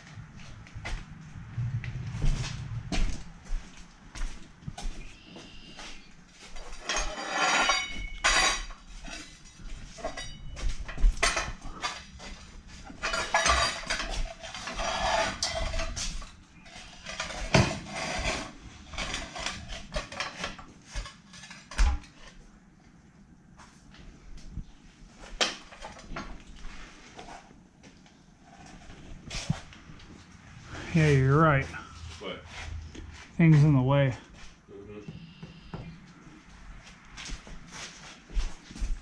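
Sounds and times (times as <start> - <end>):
metal tools clinking and scraping: 6.4 - 22.4.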